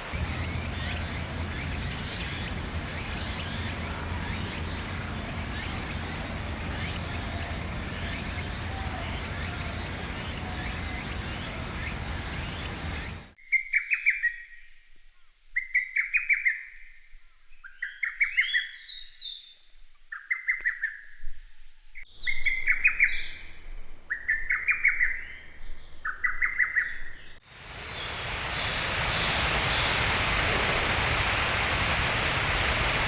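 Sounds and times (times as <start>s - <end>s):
background hiss: 0.0s - 13.4s, 27.4s - 33.0s
bird whistling song: 0.0s - 14.8s, 15.6s - 21.2s, 22.0s - 30.5s.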